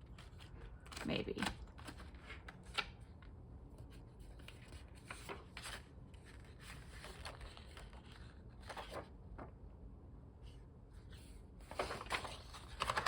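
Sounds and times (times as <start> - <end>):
paper rustling and scraping: 3.9 - 9.5, 11.0 - 13.0.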